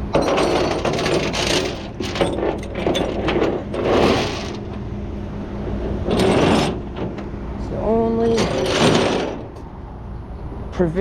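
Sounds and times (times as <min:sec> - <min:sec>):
metal chains rattling and clinking: 0:00.0 - 0:04.7, 0:06.1 - 0:07.1, 0:08.2 - 0:09.6
low engine hum: 0:01.8 - 0:11.0.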